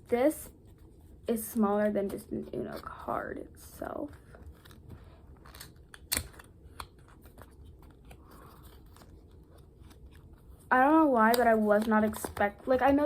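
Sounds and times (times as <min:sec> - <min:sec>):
card packaging clicks and rustles: 0:03.9 - 0:13.0.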